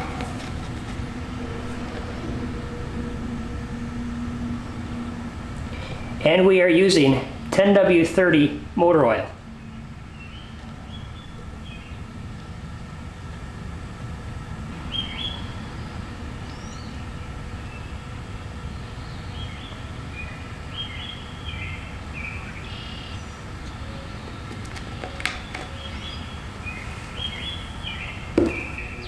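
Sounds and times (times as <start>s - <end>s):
birds chirping: 0.0s - 29.0s
low outdoor rumble: 0.0s - 29.0s.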